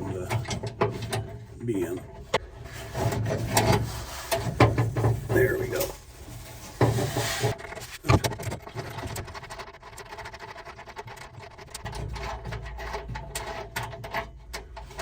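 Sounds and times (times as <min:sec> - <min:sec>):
small metallic clicks and scrapes: 0:00.0 - 0:15.0.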